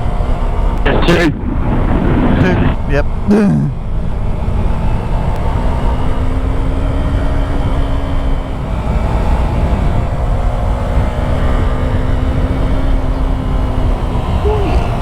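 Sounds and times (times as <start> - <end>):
wind rumble: 0.0 - 15.0
motorcycle engine running: 3.0 - 15.0.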